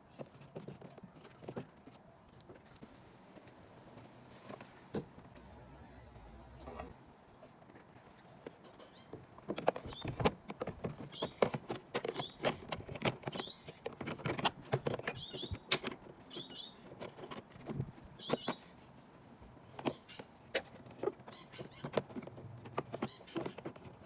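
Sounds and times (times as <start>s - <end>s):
plastic parts clicking and knocking: 0.0s - 2.8s, 7.4s - 24.0s.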